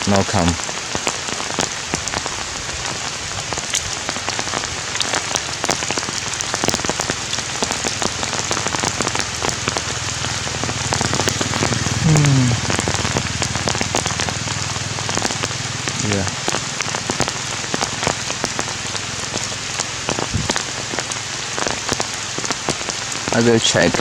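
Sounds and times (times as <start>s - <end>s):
heavy rain falling: 0.0s - 24.0s
low sound falling in pitch: 11.6s - 13.0s.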